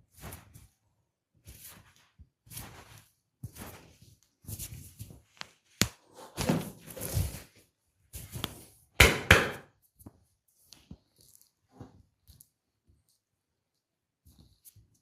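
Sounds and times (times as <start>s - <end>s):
hands rubbing and patting skin: 0.1s - 0.8s, 1.4s - 6.4s, 8.2s - 8.8s, 9.7s - 15.0s.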